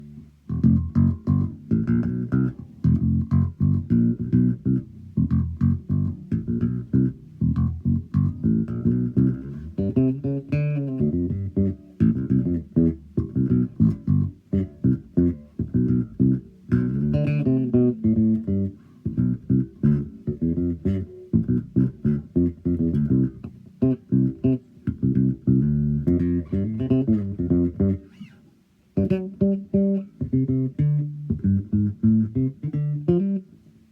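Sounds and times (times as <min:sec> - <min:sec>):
electric bass plucked runs: 0:00.0 - 0:28.4, 0:29.0 - 0:33.5.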